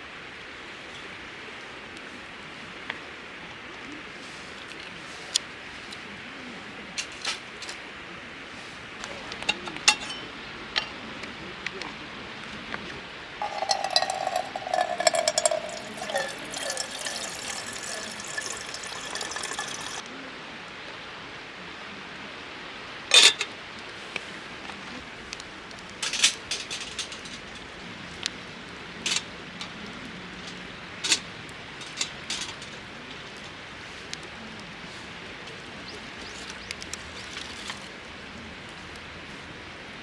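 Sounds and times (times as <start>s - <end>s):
water pouring into container: 13.4s - 20.0s.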